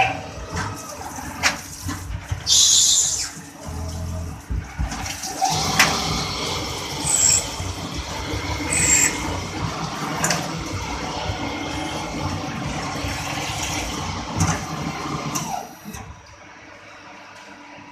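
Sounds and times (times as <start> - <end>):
machining noise: 0.0 - 4.6, 5.2 - 15.6
short high squeals: 2.5 - 3.4, 7.0 - 7.6, 8.7 - 9.3.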